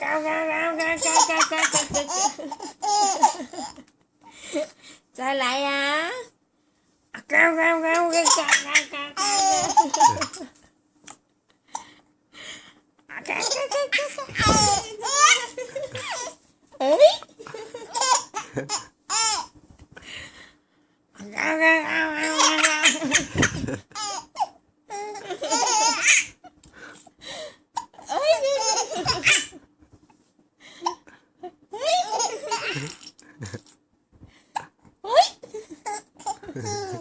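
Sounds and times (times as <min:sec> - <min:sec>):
baby laughing: 0:00.1 - 0:03.8, 0:08.0 - 0:10.5, 0:13.2 - 0:19.5, 0:22.2 - 0:26.4, 0:27.8 - 0:29.6, 0:31.7 - 0:33.0, 0:35.0 - 0:37.0.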